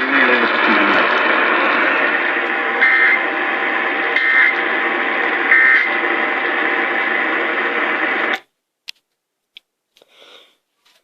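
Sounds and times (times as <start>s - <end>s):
radio hiss and static: 0.0s - 8.4s
data tone bursts: 2.8s - 3.2s, 4.2s - 4.6s, 5.5s - 6.0s.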